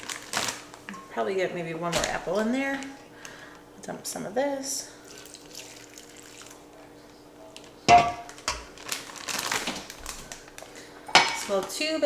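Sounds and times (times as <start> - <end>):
kitchen scraps clunking: 1.8 - 3.0, 7.8 - 10.4, 11.0 - 11.8.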